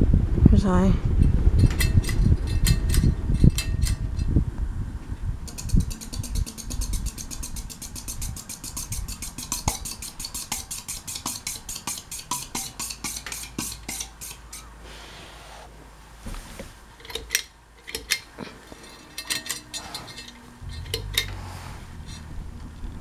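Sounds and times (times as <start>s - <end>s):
ceiling fan running: 0.0s - 23.0s
rhythmic fan ticking: 0.6s - 14.7s, 17.3s - 23.0s
low rumble: 20.3s - 23.0s.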